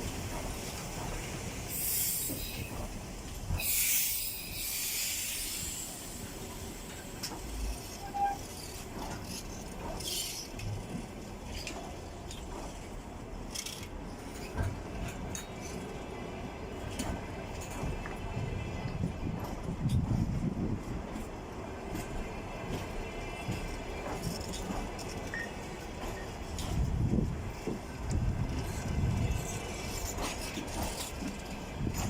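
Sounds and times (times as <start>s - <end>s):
train rolling rumble: 0.0s - 32.0s
air hissing: 3.6s - 7.0s.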